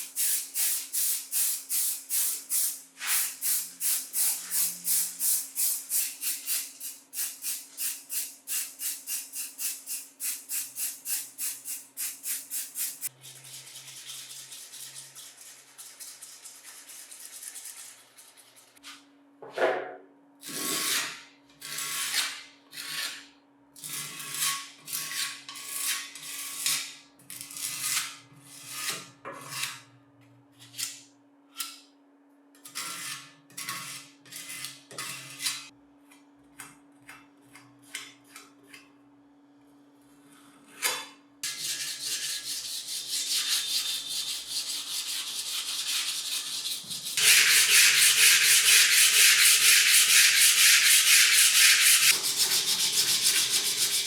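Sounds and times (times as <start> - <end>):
rubbing strokes on metal: 41.4 - 54.0
uneven scrubbing strokes: 41.5 - 54.0.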